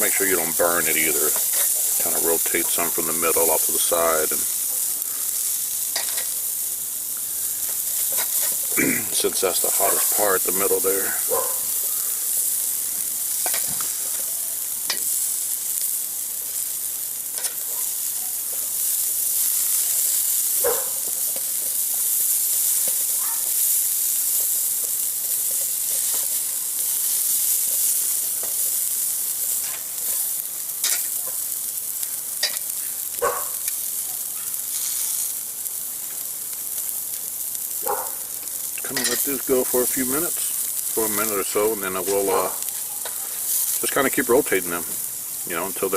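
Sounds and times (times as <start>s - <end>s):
asparagus sizzling on a grill: 0.0s - 45.9s
clicks and taps on grill: 6.0s - 6.4s, 13.4s - 15.2s, 17.3s - 18.8s, 19.5s - 26.6s, 29.5s - 33.8s.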